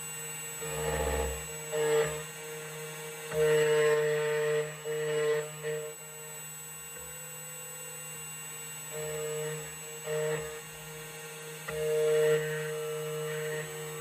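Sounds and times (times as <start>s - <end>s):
key cutting machine running: 9.0s - 14.0s.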